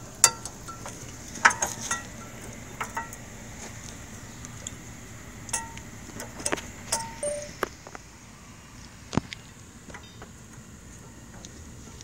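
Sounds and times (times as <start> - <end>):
metal brake pads clinking: 5.5 - 7.6.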